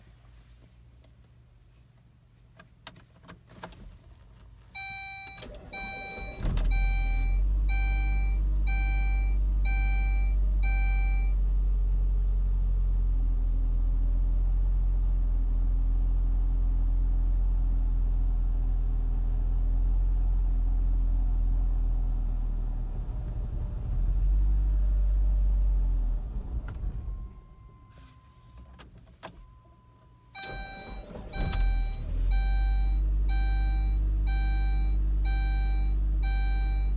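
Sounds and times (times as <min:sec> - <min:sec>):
car engine starting and idling: 0:02.6 - 0:36.9
warning chime beeping: 0:05.0 - 0:11.3.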